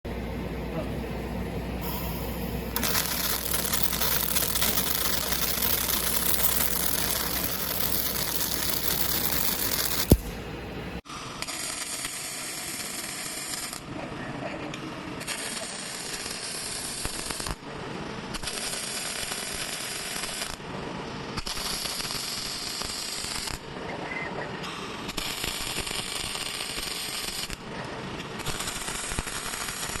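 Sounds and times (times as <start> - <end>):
production line clatter: 1.8 - 10.4
welding arc crackling: 1.8 - 13.9, 15.2 - 17.7, 18.3 - 20.6, 21.4 - 23.6, 25.0 - 27.6, 28.3 - 30.0.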